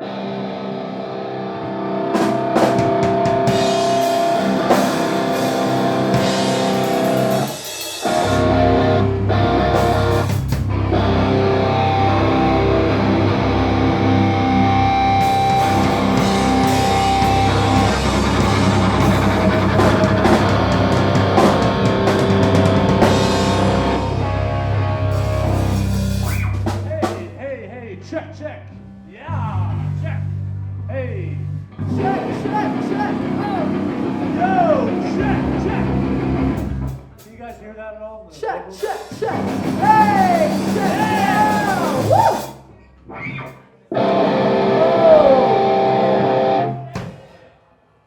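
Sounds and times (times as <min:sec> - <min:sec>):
guitar chords: 0:00.0 - 0:27.2, 0:31.7 - 0:37.0, 0:43.0 - 0:47.0
loud rock music: 0:00.0 - 0:27.4, 0:31.8 - 0:37.3, 0:38.8 - 0:47.2
bass and drum kit: 0:02.1 - 0:27.6, 0:33.2 - 0:37.6, 0:38.8 - 0:42.6.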